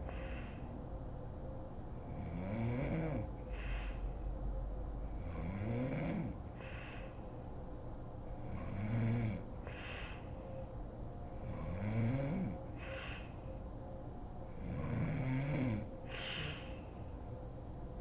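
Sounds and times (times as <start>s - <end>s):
breathy exhale: 0.0s - 0.7s, 3.5s - 4.2s, 6.6s - 7.3s, 9.6s - 10.5s, 12.8s - 13.5s, 16.1s - 17.1s
woman snoring: 2.2s - 3.3s, 5.3s - 6.4s, 8.5s - 9.4s, 11.4s - 12.6s, 14.6s - 16.7s.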